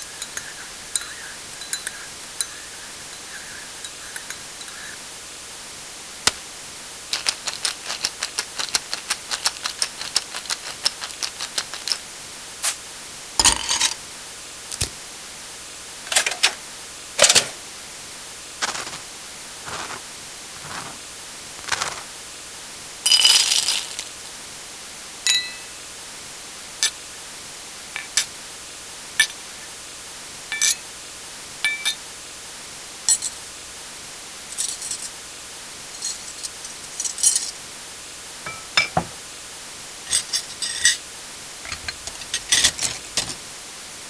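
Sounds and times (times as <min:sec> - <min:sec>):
ringing dish clink: 0:00.2 - 0:04.8, 0:25.3 - 0:25.8, 0:30.5 - 0:30.8, 0:31.6 - 0:32.0, 0:38.5 - 0:39.2
dishes knocking and clinking: 0:13.4 - 0:14.0, 0:38.5 - 0:39.2, 0:41.6 - 0:43.4.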